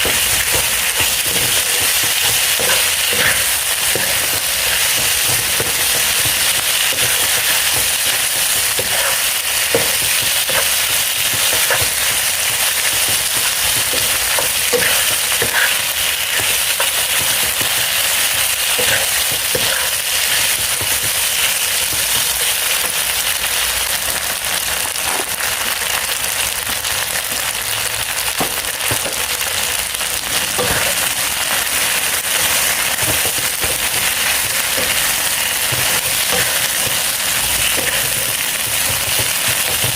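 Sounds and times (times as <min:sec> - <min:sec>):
food sizzling in a hot pan: 0:00.0 - 0:39.9
oil spattering crackles: 0:00.0 - 0:39.9.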